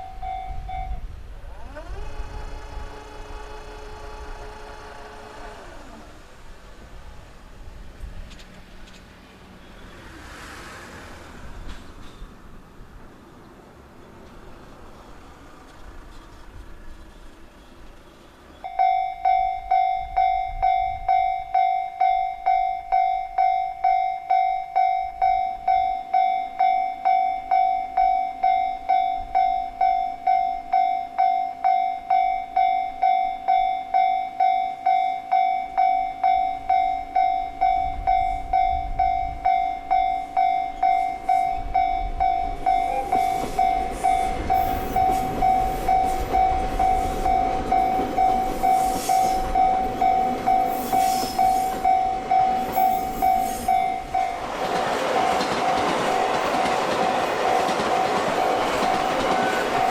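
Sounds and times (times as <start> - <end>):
level crossing warning bell: 0.0 - 1.1, 18.6 - 59.9
train rumbling: 0.0 - 59.9.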